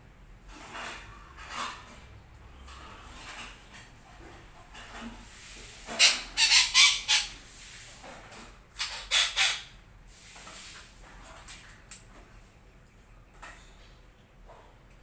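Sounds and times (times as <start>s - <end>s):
parakeet calling: 6.0s - 7.4s, 8.8s - 9.7s.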